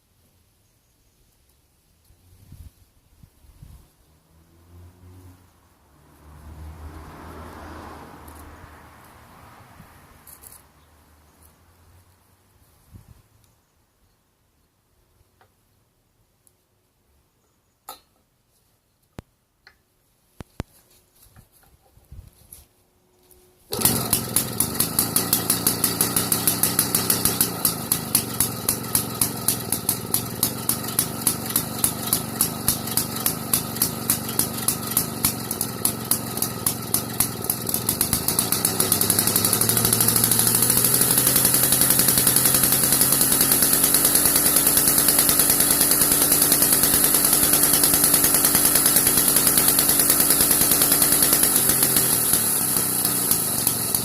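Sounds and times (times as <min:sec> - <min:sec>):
chainsaw engine running: 0:23.7 - 0:54.0.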